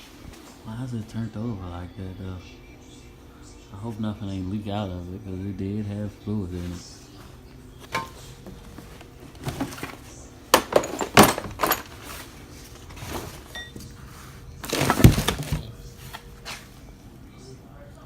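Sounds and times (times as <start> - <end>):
car parts clanking: 7.8 - 16.5.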